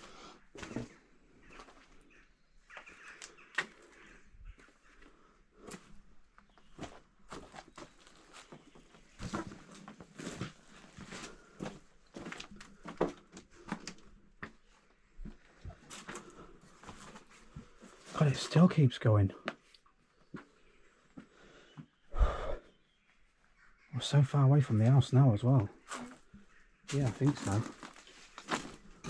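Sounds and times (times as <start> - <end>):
footsteps over debris: 6.6 - 18.2, 26.9 - 29.0.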